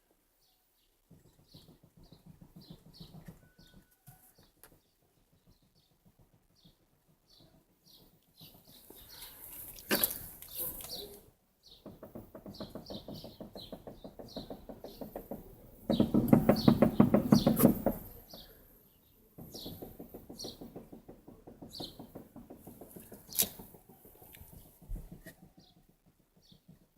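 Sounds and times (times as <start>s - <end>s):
rapid knocking from car wheel: 1.1s - 3.9s, 11.8s - 18.5s, 19.4s - 26.9s.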